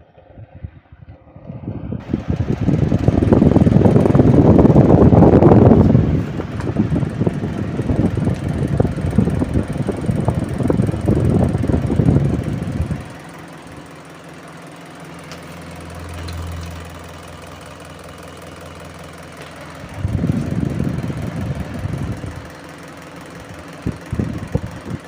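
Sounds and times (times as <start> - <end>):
fan rattling knock: 2.0 - 13.3, 19.4 - 22.7, 23.3 - 25.0
table fan motor hum: 2.0 - 25.0.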